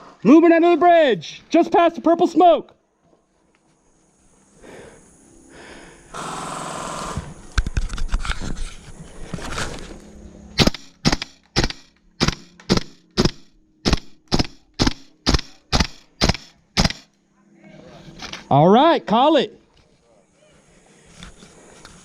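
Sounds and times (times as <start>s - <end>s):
airsoft gun clicks: 10.6s - 17.1s
airsoft gun rattling burst: 10.6s - 17.1s
airsoft gun single shots: 10.6s - 17.1s.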